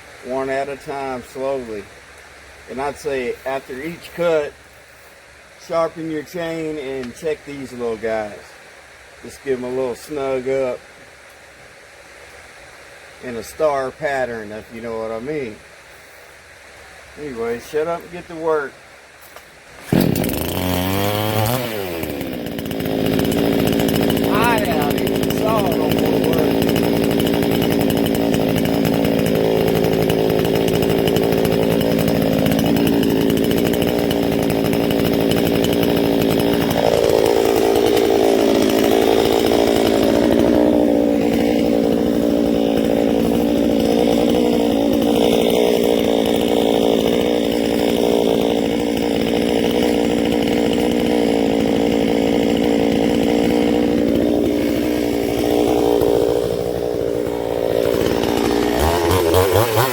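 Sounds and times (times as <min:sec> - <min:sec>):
chainsaw ripping a log: 0:02.7 - 0:04.5, 0:19.3 - 0:59.9.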